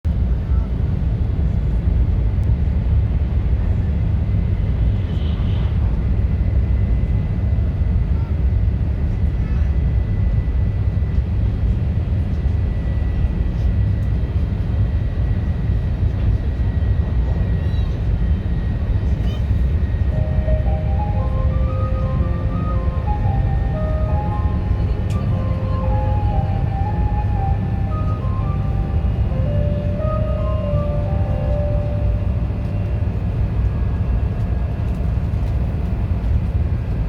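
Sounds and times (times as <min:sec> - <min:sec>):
train running rumble: 0:20.0 - 0:37.0
faint high whine: 0:20.1 - 0:35.8.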